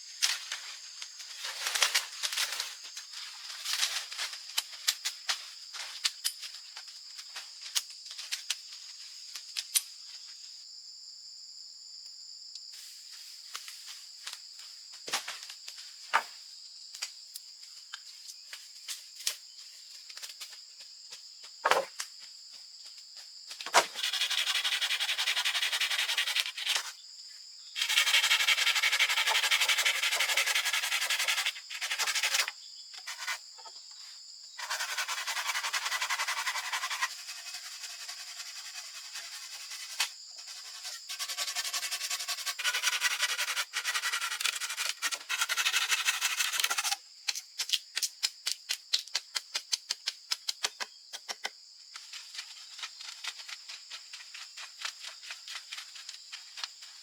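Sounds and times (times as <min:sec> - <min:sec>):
insects droning: 0:00.0 - 0:57.0
rasping scraping noise: 0:23.7 - 0:26.9, 0:27.8 - 0:33.4, 0:34.6 - 0:47.0.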